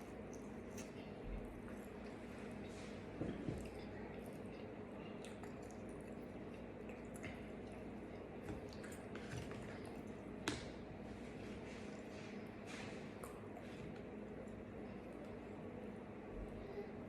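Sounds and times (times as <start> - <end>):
person chewing wetly: 3.4 - 10.4.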